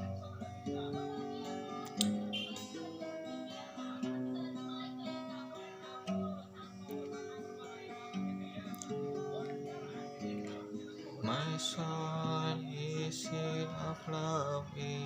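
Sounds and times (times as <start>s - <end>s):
acoustic guitar chords: 0.0s - 15.0s.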